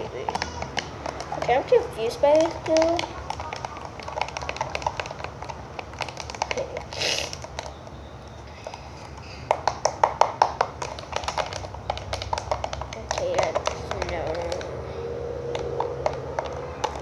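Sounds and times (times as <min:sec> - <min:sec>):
slime being stirred by hand: 0:00.1 - 0:17.0
short hiss: 0:07.0 - 0:07.4.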